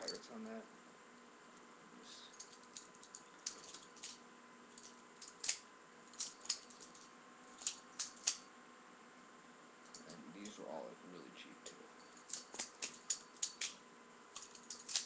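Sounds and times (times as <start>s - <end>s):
butterfly knife clicking and clacking: 4.8s - 6.9s, 7.6s - 8.4s, 12.2s - 13.8s, 14.4s - 15.0s.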